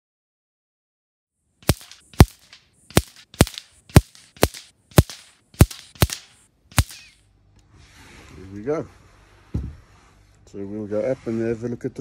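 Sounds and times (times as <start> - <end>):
air rifle shots: 1.6 - 7.3.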